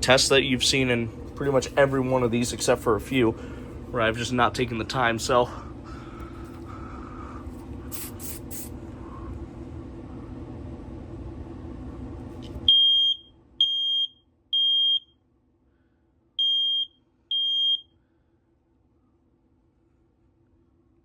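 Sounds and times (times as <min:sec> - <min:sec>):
smoke alarm beeping: 0:12.7 - 0:15.2, 0:16.4 - 0:17.9.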